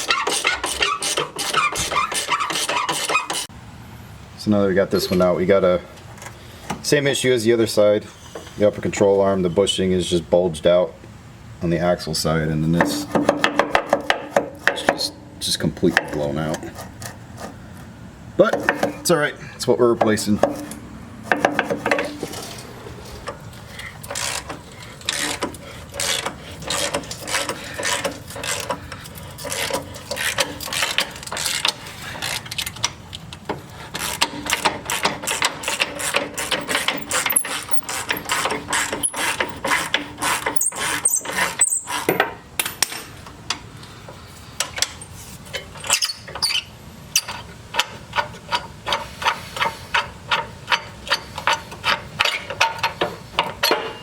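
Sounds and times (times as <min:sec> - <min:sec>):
brief high squeaks: 0:45.8 - 0:47.3.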